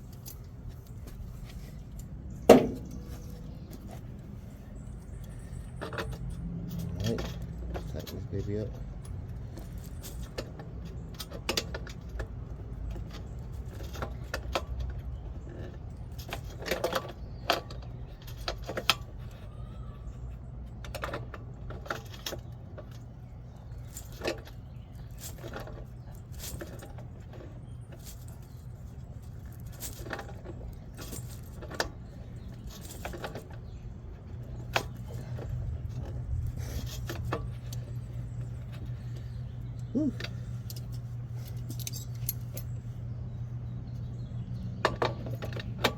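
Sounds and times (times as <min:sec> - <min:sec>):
steady low hum: 0:17.3 - 0:45.9.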